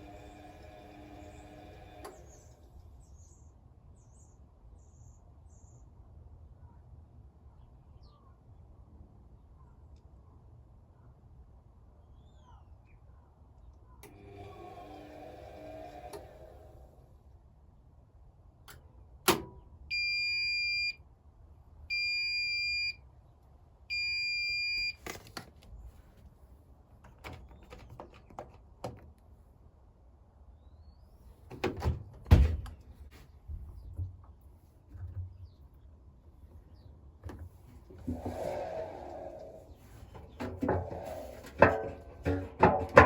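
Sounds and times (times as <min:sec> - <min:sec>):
washing machine beeps: 0:19.9 - 0:21.0, 0:21.9 - 0:23.0, 0:23.9 - 0:25.0.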